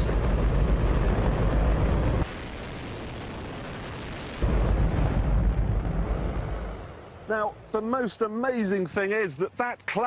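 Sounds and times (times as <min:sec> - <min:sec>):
rocket engine roaring: 0:00.0 - 0:07.2.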